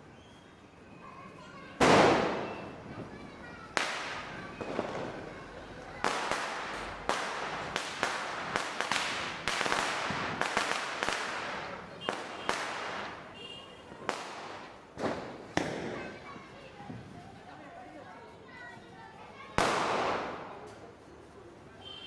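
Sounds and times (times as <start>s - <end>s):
firecrackers banging: 1.5s - 17.4s, 19.4s - 21.2s
firecracker hissing crackle: 1.8s - 17.4s, 19.4s - 21.2s.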